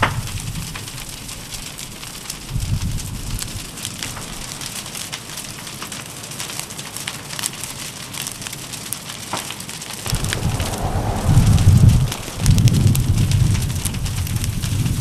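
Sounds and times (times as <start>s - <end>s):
wind rumble on microphone: 0.0s - 1.6s, 2.4s - 4.4s, 10.1s - 15.0s
fire crackling and popping: 0.2s - 15.0s
fire hissing: 10.0s - 15.0s.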